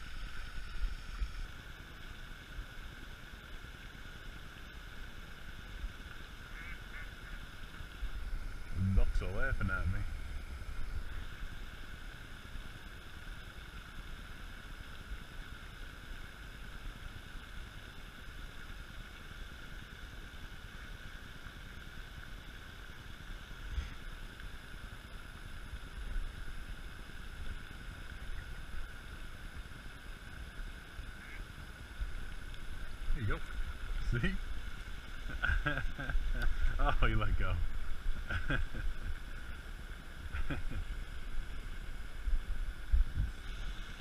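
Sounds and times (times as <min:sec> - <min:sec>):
wind rumbling on microphone: 0:00.0 - 0:02.2, 0:06.8 - 0:13.2, 0:23.6 - 0:44.0
steady high-pitched drone: 0:00.0 - 0:16.5, 0:23.4 - 0:44.0
faint tick: 0:23.8 - 0:24.6, 0:32.0 - 0:32.7, 0:36.3 - 0:36.6.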